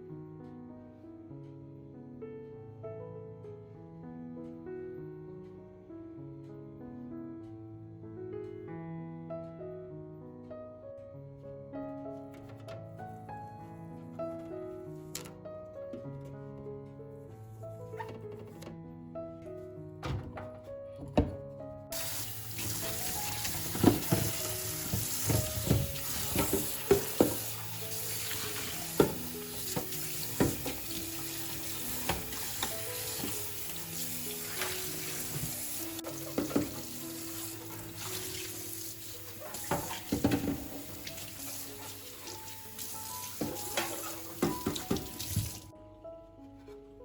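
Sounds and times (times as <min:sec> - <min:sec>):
tap running into sink: 0:21.1 - 0:45.7.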